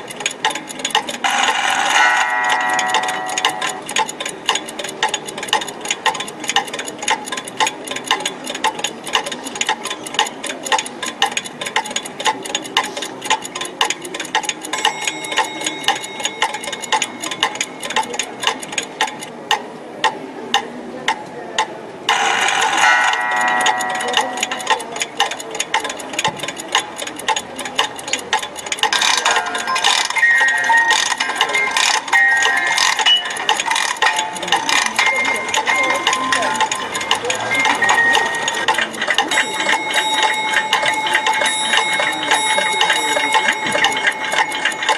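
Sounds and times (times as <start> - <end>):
alarm clock ringing: 0.0 - 6.2, 14.2 - 19.2, 22.1 - 44.9
alarm clock ticking: 0.0 - 44.9.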